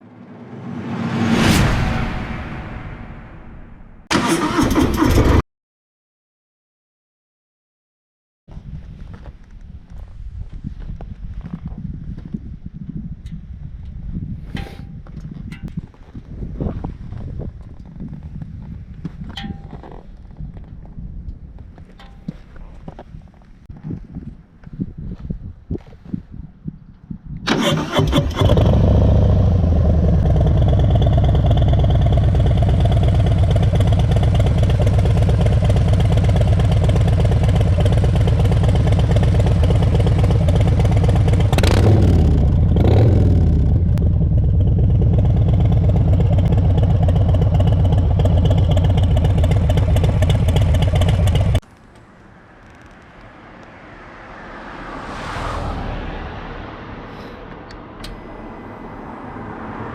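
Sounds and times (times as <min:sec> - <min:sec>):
motorcycle starter cranking: 0:04.1 - 0:05.4, 0:27.5 - 0:28.9
motorcycle engine idling and revving: 0:27.4 - 0:51.6.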